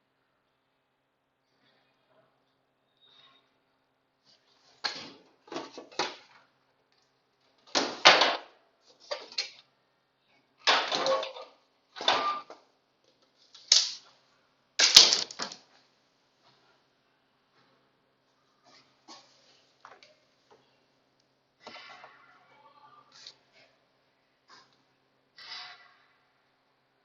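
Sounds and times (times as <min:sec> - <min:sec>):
hard objects clattering: 0:14.8 - 0:15.7.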